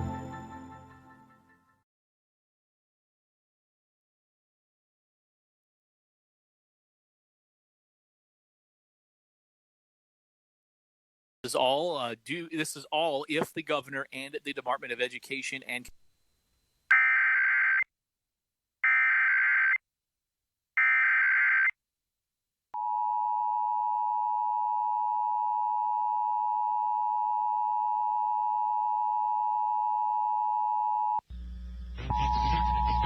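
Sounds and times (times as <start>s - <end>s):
two-tone attention signal: 32.0s - 33.0s.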